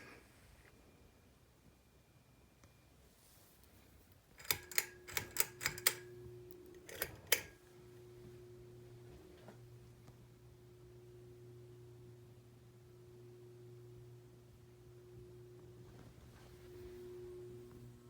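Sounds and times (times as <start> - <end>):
fan motor hum: 4.2 - 18.0
fan switch clicking: 4.4 - 6.2, 6.8 - 7.6.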